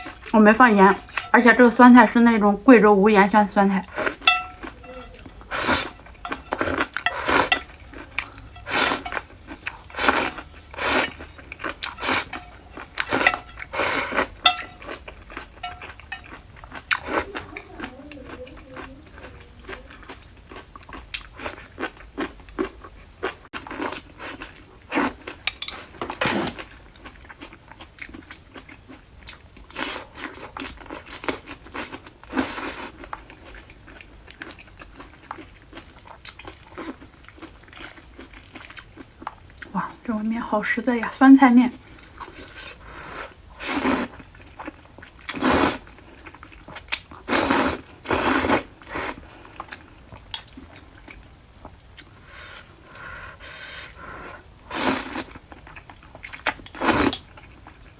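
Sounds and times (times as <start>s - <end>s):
chopsticks scraping a bowl: 3.8s - 17.0s, 25.0s - 26.6s
person chewing: 3.8s - 39.8s, 41.8s - 57.9s.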